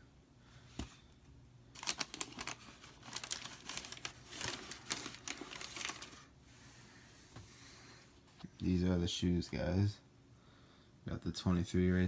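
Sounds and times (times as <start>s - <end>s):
packing paper crinkling: 1.7s - 6.4s.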